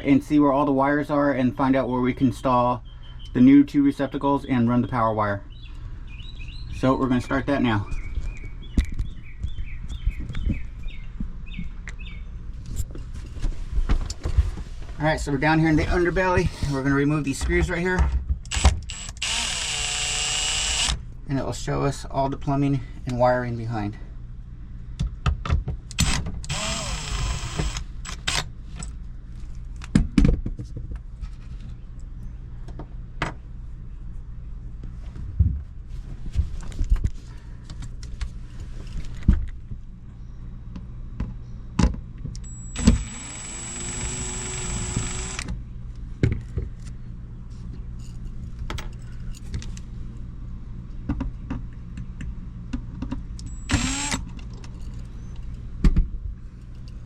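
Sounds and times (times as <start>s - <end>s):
steady low hum: 0.0s - 57.0s
cordless drill running: 18.5s - 21.0s, 26.0s - 28.4s, 42.4s - 45.5s, 53.4s - 54.2s.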